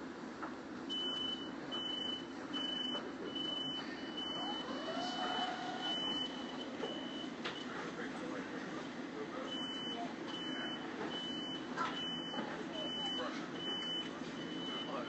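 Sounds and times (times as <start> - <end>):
high electronic warning beeps: 0.9 - 7.7, 9.4 - 15.0.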